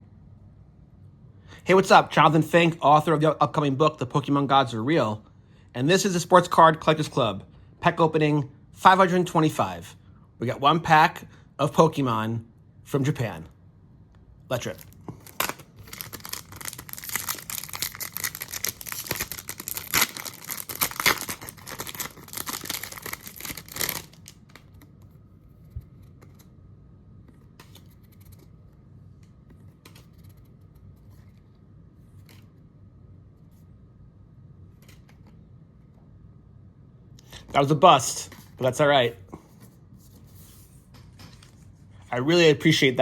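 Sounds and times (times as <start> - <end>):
foil pack tearing and crinkling: 14.7 - 24.4
faint card rustles and ticks: 22.0 - 26.6, 27.2 - 32.6, 38.3 - 42.0.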